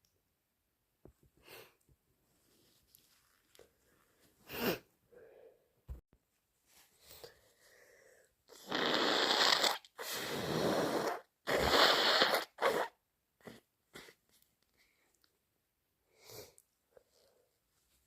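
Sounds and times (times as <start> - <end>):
person blowing air through nose: 4.5 - 4.9, 8.5 - 14.2.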